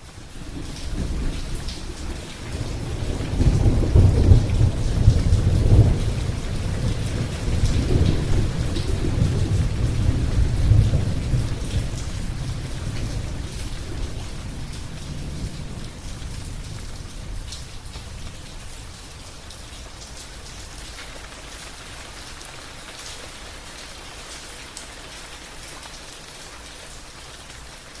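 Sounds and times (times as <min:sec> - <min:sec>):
rain falling: 0:00.0 - 0:28.0
thunder rumbling: 0:00.5 - 0:19.0.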